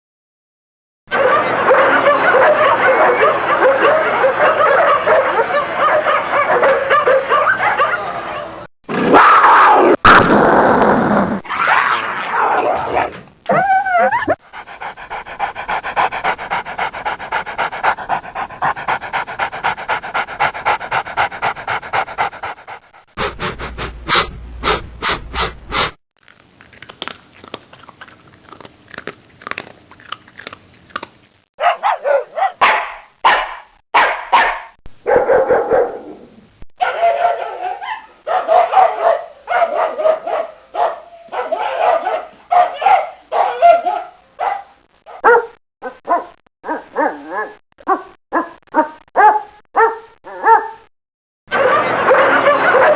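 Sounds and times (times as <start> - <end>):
dogs fighting and barking: 11.4 - 23.2, 26.2 - 35.9, 36.8 - 45.4, 51.5 - 52.9.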